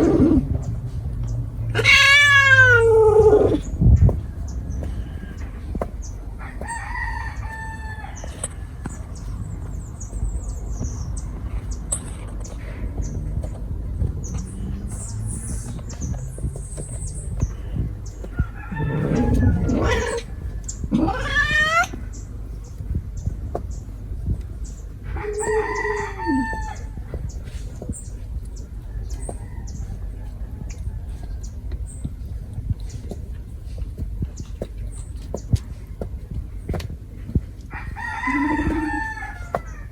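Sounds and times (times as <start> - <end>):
animal drawn-out call: 0.0 - 0.6, 1.7 - 3.7, 18.7 - 22.0, 38.2 - 39.6
steady low rumble: 0.0 - 39.9
long animal call: 18.7 - 20.3, 20.9 - 22.0.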